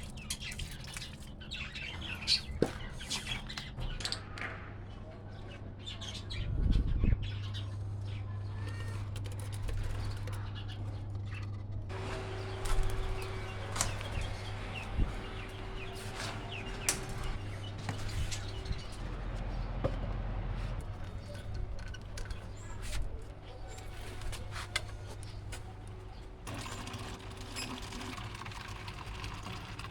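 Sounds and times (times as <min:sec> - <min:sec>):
low hum: 0:06.4 - 0:23.6.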